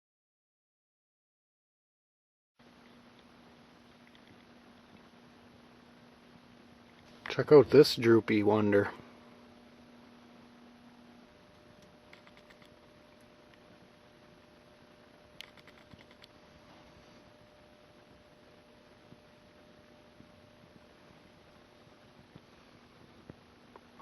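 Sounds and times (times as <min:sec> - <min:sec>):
faint hum: 0:02.6 - 0:24.0
faint clicks: 0:11.8 - 0:13.6.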